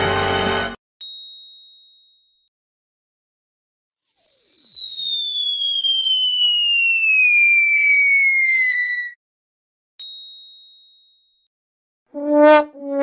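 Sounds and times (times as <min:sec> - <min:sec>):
cartoon falling whistle: 0:04.0 - 0:09.2.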